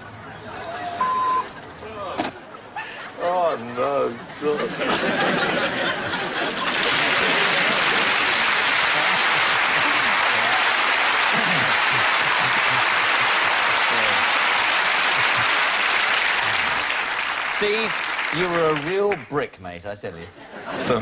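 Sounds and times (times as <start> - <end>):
audience applauding: 5.1 - 19.4.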